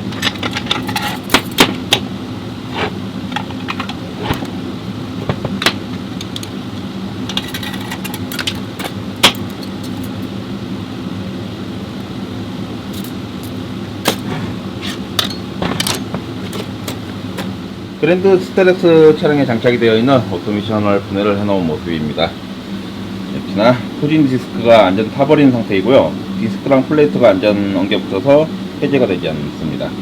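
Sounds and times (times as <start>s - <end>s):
low machine hum: 0.0s - 30.0s
metal tools clinking and knocking: 0.1s - 1.7s, 7.3s - 10.2s, 14.8s - 17.5s.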